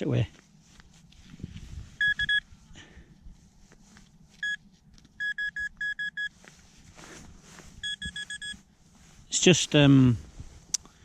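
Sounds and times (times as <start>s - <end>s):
metal detector beeps: 2.0s - 2.4s, 4.4s - 4.6s, 5.2s - 6.4s, 7.8s - 8.6s.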